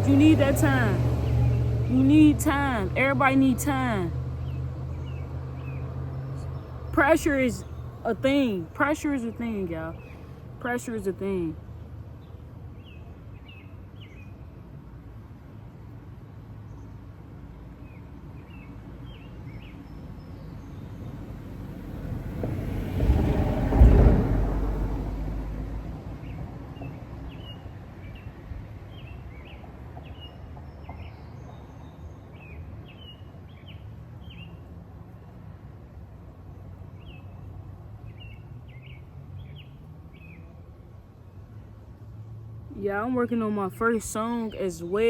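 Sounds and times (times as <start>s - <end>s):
vehicle passing by: 0.0s - 11.5s, 21.0s - 27.3s.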